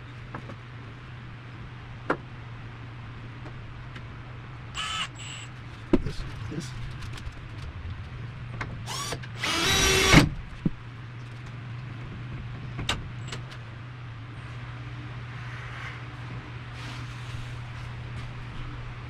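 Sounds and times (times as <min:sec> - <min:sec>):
steady low hum: 0:00.0 - 0:19.0
cordless drill whirring: 0:04.8 - 0:05.5, 0:08.9 - 0:10.2.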